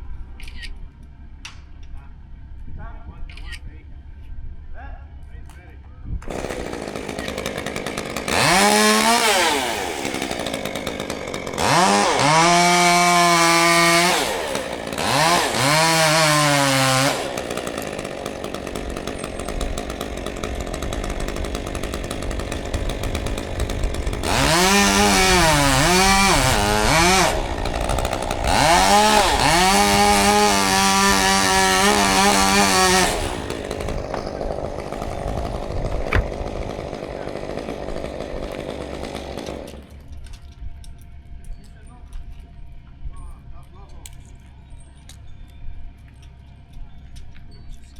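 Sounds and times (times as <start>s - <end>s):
chainsaw revving: 6.2s - 40.2s.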